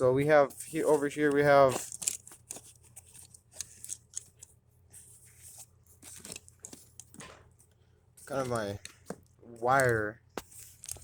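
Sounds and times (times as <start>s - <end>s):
tool bag rustling: 0.3s - 4.4s.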